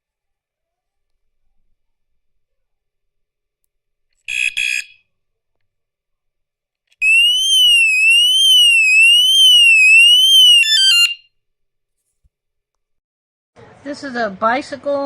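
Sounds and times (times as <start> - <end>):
bike alarm siren: 4.3 - 5.0, 7.0 - 11.3
stepped beeps: 7.0 - 11.2.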